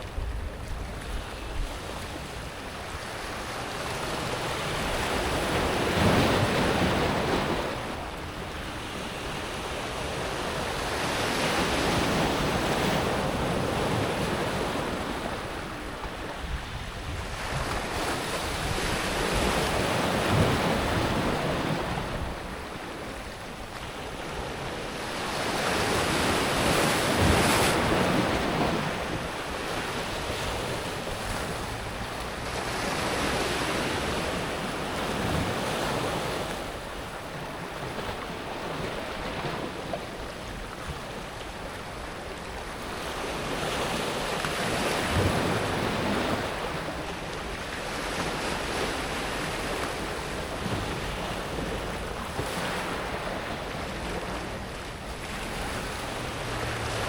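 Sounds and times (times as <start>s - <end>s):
waves washing over pebbles: 42.8s - 57.0s.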